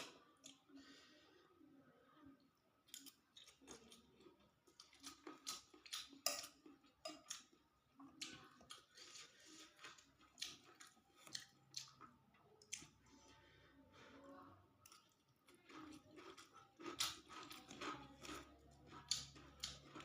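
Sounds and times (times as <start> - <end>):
chewing with wet mouth noises: 2.8 - 13.2, 14.9 - 20.0.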